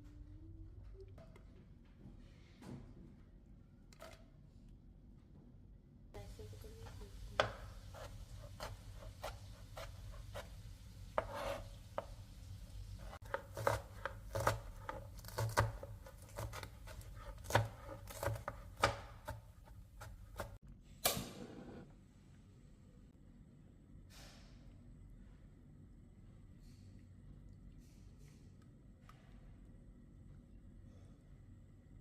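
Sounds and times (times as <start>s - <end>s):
knife chopping on cutting board: 7.1s - 12.2s, 13.0s - 20.6s.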